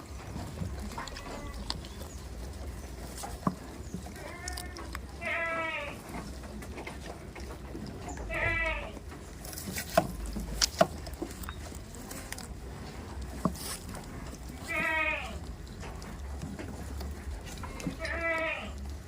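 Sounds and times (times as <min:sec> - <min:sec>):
goat bleating: 0:00.8 - 0:02.0, 0:04.2 - 0:06.3, 0:08.2 - 0:09.1, 0:14.5 - 0:15.5, 0:17.4 - 0:19.0.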